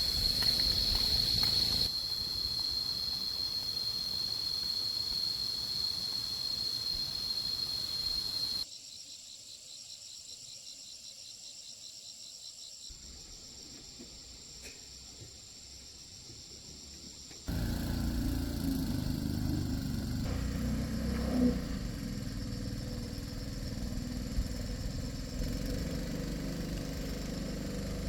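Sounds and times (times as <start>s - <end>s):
insects high shrill drone: 0.0s - 8.7s, 17.5s - 28.0s
pulsing insect call: 0.0s - 28.0s.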